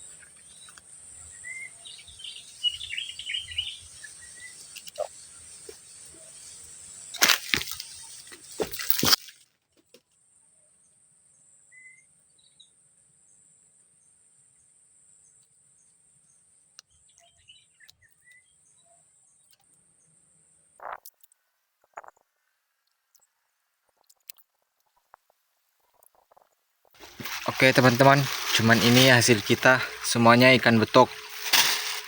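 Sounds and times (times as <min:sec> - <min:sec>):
bird chirp: 0:00.0 - 0:06.5, 0:16.9 - 0:19.6.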